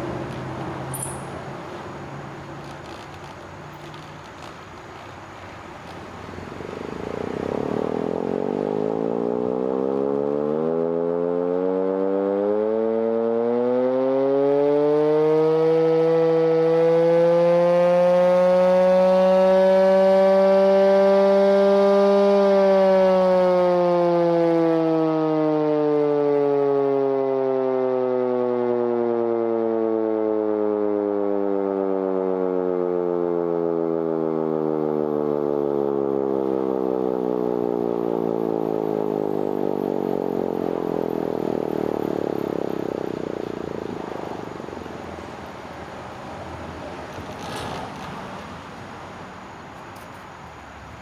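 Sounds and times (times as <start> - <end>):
siren wailing: 8.1 - 44.0.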